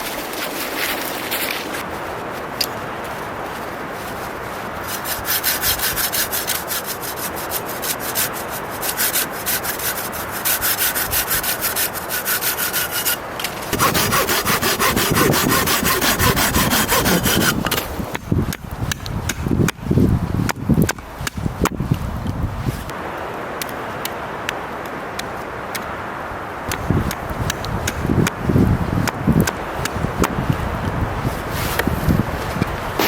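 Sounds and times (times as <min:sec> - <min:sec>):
hand saw cutting wood: 0:04.8 - 0:18.1, 0:31.5 - 0:33.0.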